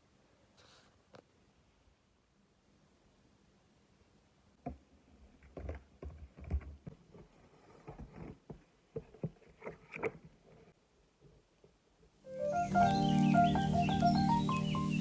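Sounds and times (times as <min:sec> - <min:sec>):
objects being handled: 0:04.6 - 0:12.2.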